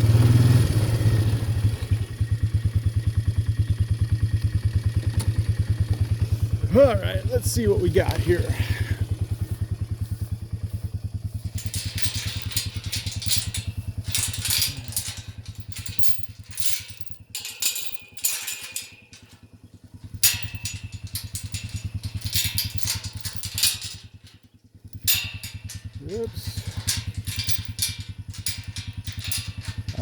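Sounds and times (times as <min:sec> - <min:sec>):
atv engine running slowly: 0:00.0 - 0:30.0
clattering and rustling: 0:10.8 - 0:24.3, 0:24.9 - 0:30.0.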